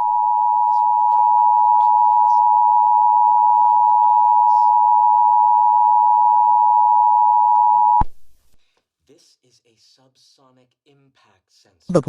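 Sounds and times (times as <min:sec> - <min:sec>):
loud steady two-tone beep: 0:00.0 - 0:08.1.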